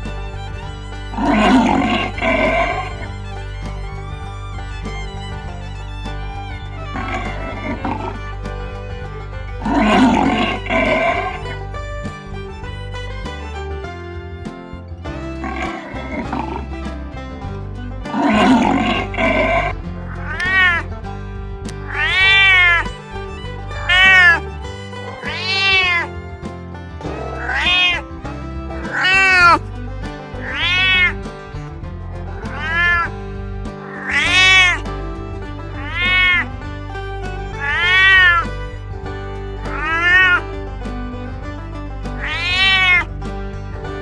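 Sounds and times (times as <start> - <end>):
background music with bass: 0.0 - 44.0
cat meowing: 20.1 - 20.8, 21.8 - 24.4, 25.0 - 26.1, 27.1 - 28.0, 28.8 - 29.6, 30.4 - 31.2, 32.4 - 33.1, 33.8 - 34.8, 35.7 - 36.5, 37.5 - 38.5, 39.6 - 40.5, 42.2 - 43.1.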